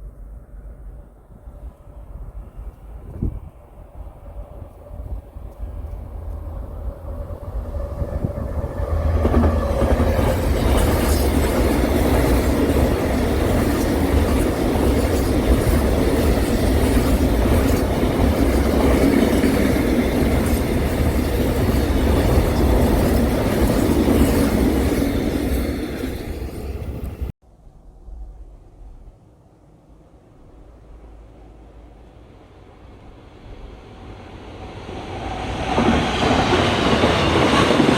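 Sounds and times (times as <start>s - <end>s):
train passing on rails: 0.0s - 27.3s, 28.2s - 37.9s
rail clacking: 4.7s - 27.3s.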